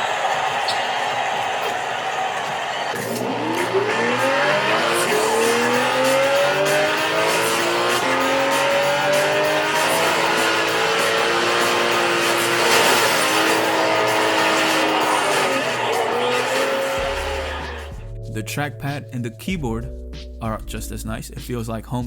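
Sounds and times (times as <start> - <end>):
race car engine accelerating: 2.9 - 18.0.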